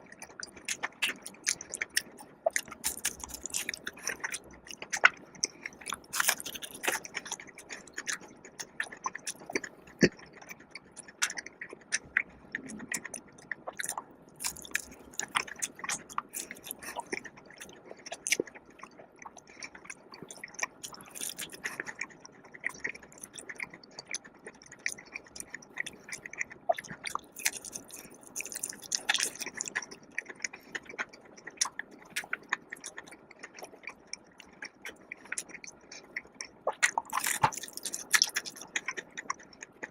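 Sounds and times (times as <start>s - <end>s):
chewing crunchy fried chicken: 0.0s - 39.9s
wet mouth clicks: 0.3s - 39.9s.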